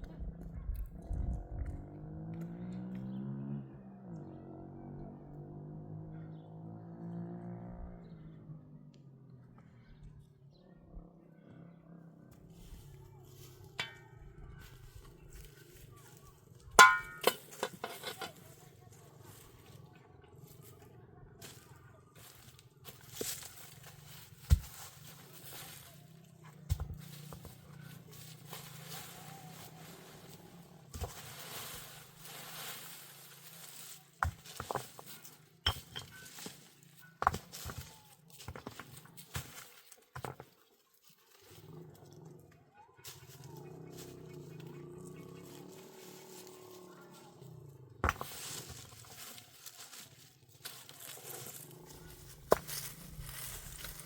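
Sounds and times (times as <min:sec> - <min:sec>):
metal cookware clanking: 0:13.8 - 0:14.0, 0:16.8 - 0:18.4
hard objects knocking: 0:16.8 - 0:18.3, 0:34.2 - 0:36.3.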